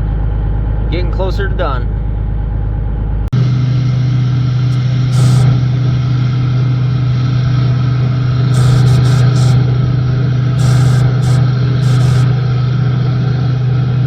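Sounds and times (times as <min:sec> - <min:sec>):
vehicle engine humming: 0:04.7 - 0:05.9, 0:08.5 - 0:12.7
high hiss bursts: 0:05.1 - 0:05.6, 0:08.5 - 0:09.7, 0:10.6 - 0:12.4.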